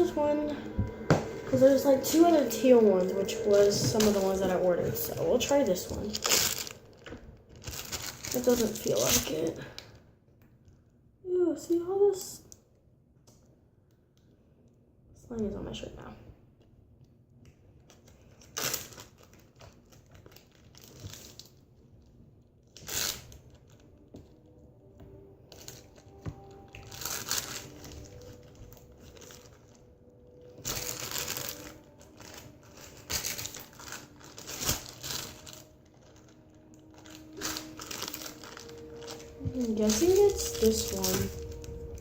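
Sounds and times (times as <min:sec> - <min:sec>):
plastic bags crinkling: 0:00.0 - 0:10.0, 0:17.8 - 0:22.0, 0:22.6 - 0:42.0.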